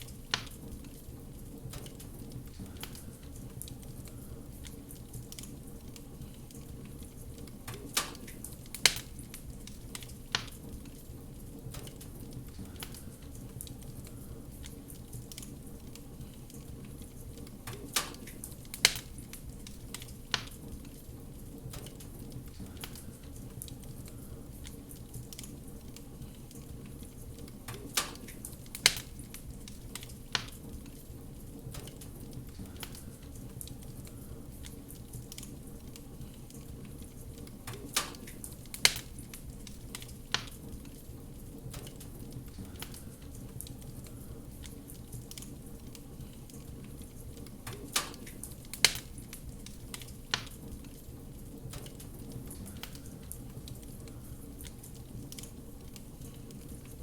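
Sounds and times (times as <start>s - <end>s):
wood fire crackling: 0.0s - 57.0s
fire popping sharply: 27.4s - 31.1s, 35.0s - 57.0s.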